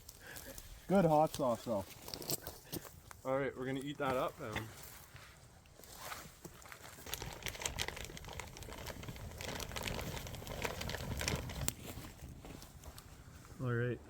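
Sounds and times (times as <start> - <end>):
crinkling and crackling: 0.0 - 13.7.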